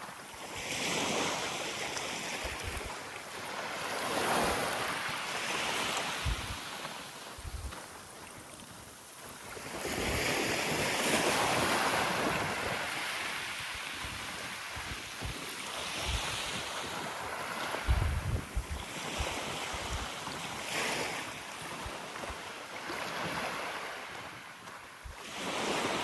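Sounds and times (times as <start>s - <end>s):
small waves washing on sand: 0.0s - 26.0s
wind buffeting microphone: 4.1s - 8.0s, 9.5s - 24.3s.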